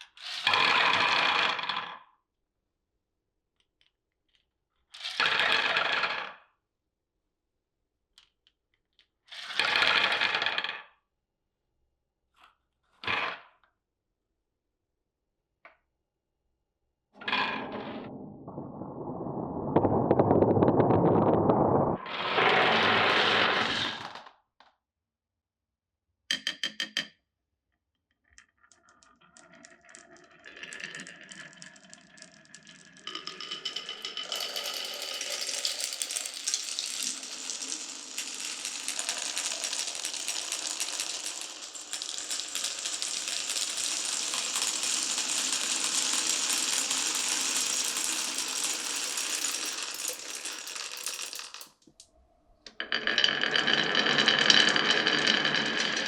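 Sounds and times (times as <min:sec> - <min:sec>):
marbles clattering through marble run: 0:32.3 - 0:51.8, 0:52.8 - 0:56.0.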